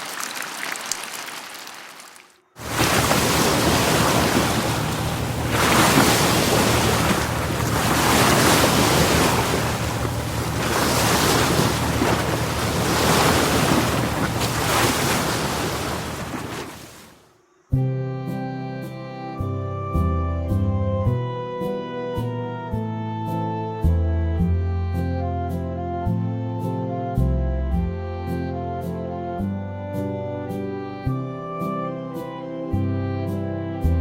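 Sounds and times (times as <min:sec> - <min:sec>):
ocean waves rushing: 0:02.6 - 0:17.2.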